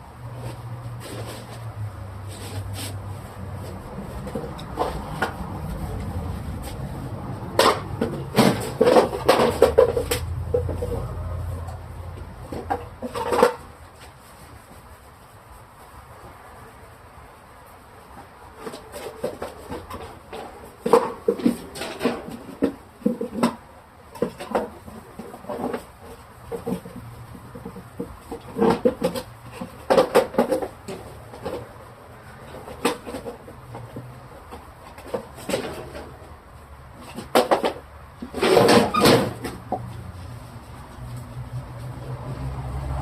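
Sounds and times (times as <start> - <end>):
short knocks rubs and squeaks: 38.2 - 40.0.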